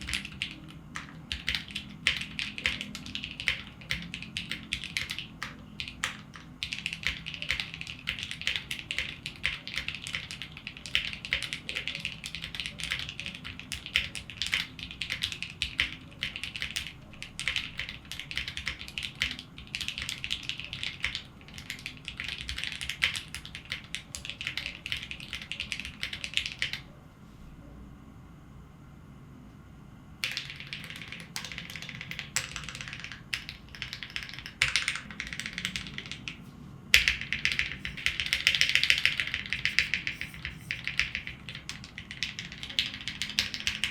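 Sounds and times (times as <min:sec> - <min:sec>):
mechanical keyboard typing: 0:00.0 - 0:26.8, 0:30.2 - 0:43.9.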